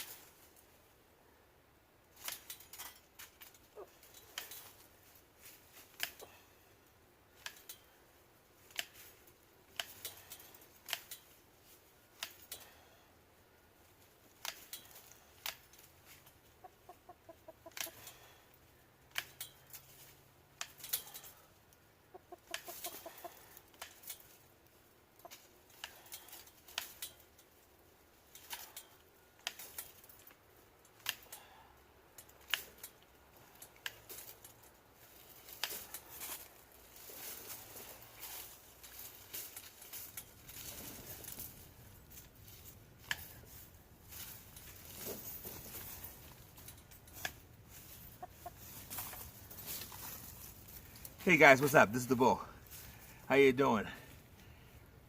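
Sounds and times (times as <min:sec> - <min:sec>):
chickens clucking: 0:16.4 - 0:18.2, 0:21.8 - 0:23.8, 0:47.8 - 0:50.1.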